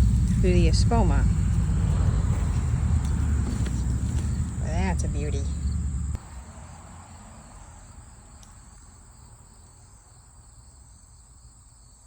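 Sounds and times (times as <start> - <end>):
low background rumble: 0.0 - 6.2
crickets trilling: 0.0 - 12.0.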